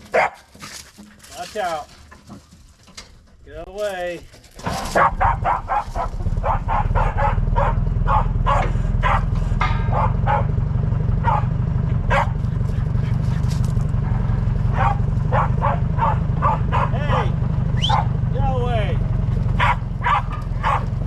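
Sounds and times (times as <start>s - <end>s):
dog barking: 0.0s - 0.5s, 4.9s - 10.6s, 11.2s - 18.3s, 19.5s - 21.0s
heavy machine engine running: 4.5s - 21.0s.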